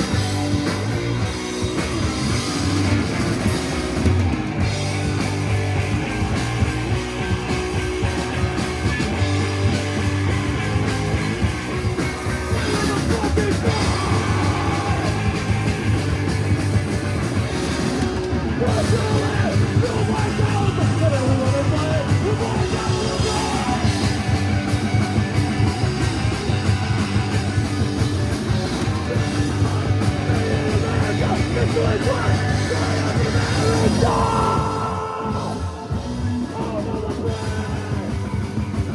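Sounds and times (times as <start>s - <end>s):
drums: 0.0s - 38.9s
guitar: 0.0s - 38.9s
person singing: 12.5s - 15.9s, 18.6s - 24.3s, 28.9s - 38.7s.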